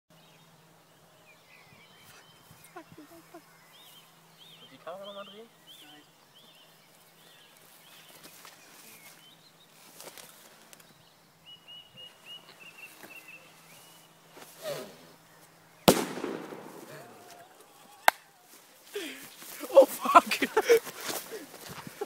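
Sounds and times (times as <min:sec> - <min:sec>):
small birds chirping: 0:00.1 - 0:22.0
faint rustles and clicks: 0:06.9 - 0:11.1.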